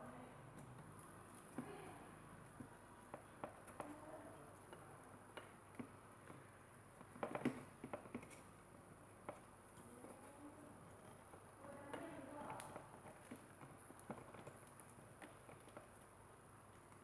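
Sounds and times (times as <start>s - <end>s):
small clicks and taps of parts: 2.6s - 8.5s, 9.2s - 10.3s, 10.9s - 16.1s.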